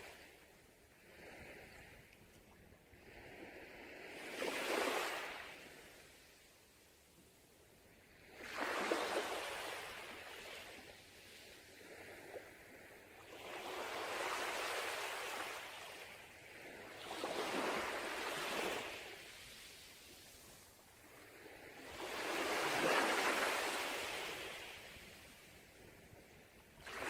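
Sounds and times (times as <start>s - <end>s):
sea waves breaking on beach: 2.9s - 6.2s, 8.2s - 25.8s, 26.8s - 27.0s.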